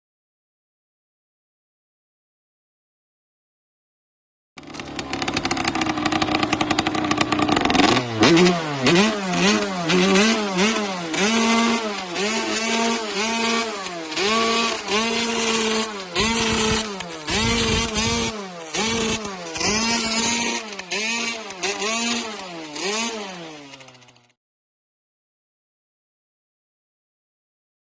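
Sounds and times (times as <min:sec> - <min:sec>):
motorbike engine idling and revving: 0:04.6 - 0:24.4.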